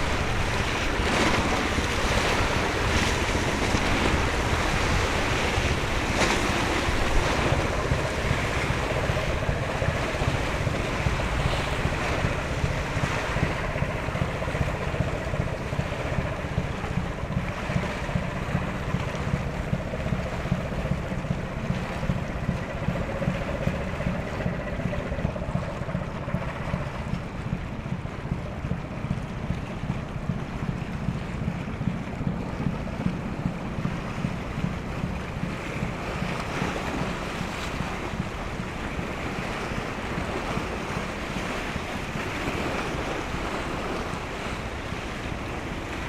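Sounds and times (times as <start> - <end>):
sea wash: 0.0 - 46.0
ship engine running: 0.0 - 46.0
wind buffeting microphone: 0.0 - 46.0.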